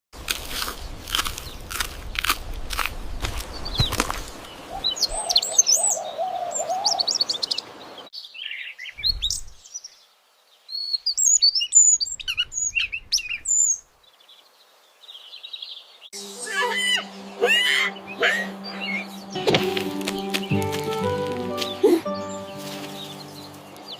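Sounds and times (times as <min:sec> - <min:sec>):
sharp crunching clicks: 0:00.2 - 0:04.2
cartoon bird chirps and trills: 0:16.4 - 0:19.0.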